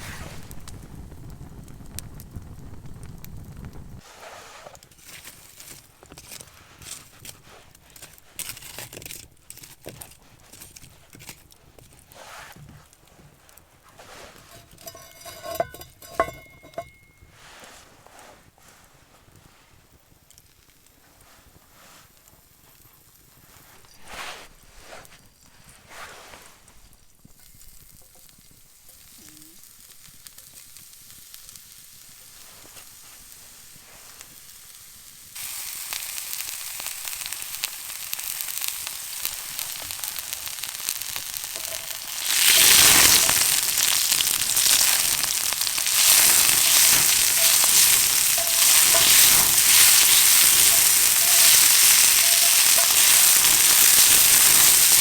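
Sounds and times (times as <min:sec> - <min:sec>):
food sizzling and crackling in pan: 0:04.7 - 0:17.7, 0:18.9 - 0:55.0.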